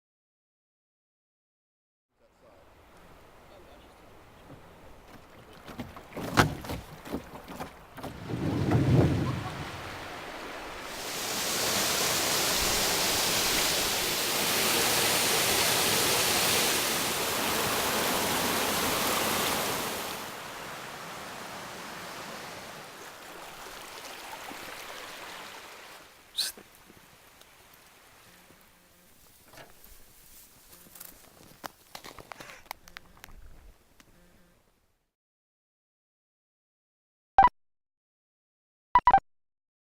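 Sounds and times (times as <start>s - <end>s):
rushing water: 2.4s - 29.9s.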